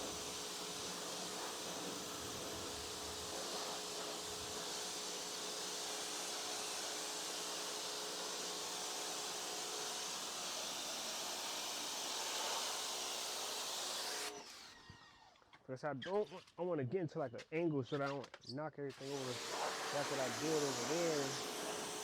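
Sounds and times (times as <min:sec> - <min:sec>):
pressure washer motor hum: 0:00.0 - 0:13.4, 0:19.0 - 0:22.0
pressure washer water hiss: 0:00.0 - 0:14.2, 0:19.1 - 0:22.0.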